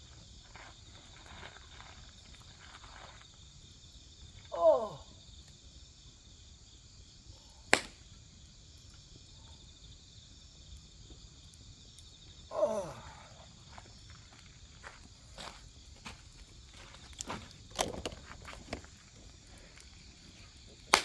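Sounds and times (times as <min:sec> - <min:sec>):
crickets chirping: 0:00.0 - 0:21.0
firewood popping: 0:07.5 - 0:09.3, 0:10.1 - 0:21.0.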